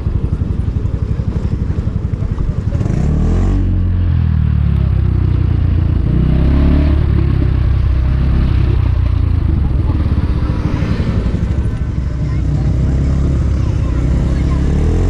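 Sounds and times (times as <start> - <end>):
small motorbike engine accelerating: 5.3 - 15.0.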